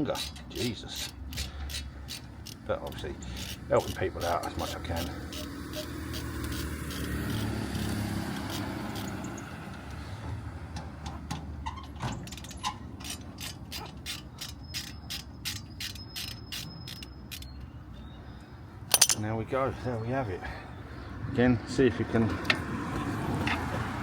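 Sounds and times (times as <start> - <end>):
ratchet wrench clicking: 0.1 - 9.5, 12.2 - 17.6, 18.9 - 19.2.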